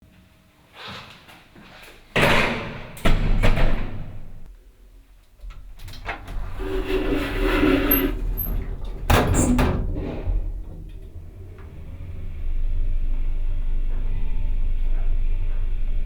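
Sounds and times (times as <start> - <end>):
elevator door scraping rattle: 5.8 - 16.0
steady low hum: 8.2 - 16.0
metallic door clang: 8.7 - 11.4.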